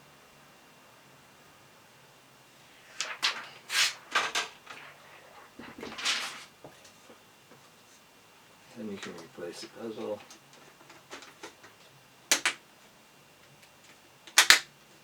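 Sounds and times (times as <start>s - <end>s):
plastic film peeling: 2.8s - 6.7s.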